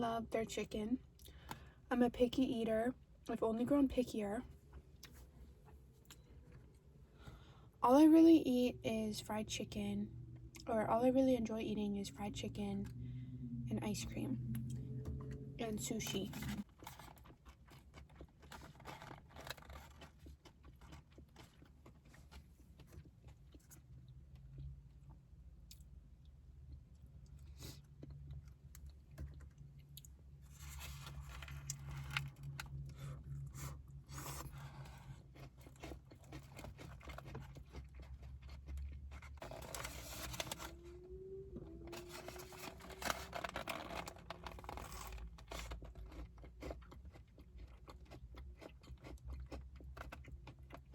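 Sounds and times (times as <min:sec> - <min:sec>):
crunching and chewing: 0:04.7 - 0:07.5, 0:15.9 - 0:41.1, 0:41.9 - 0:50.9
low hum: 0:06.0 - 0:16.7, 0:28.0 - 0:37.5, 0:38.4 - 0:45.6
wrapper tearing and scraping: 0:16.0 - 0:20.2, 0:39.1 - 0:40.9, 0:41.9 - 0:46.2.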